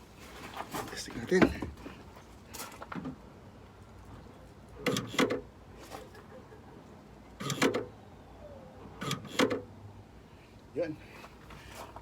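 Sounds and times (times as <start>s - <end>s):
liftgate release clicking: 4.8s - 5.4s, 7.4s - 7.9s, 9.0s - 9.6s.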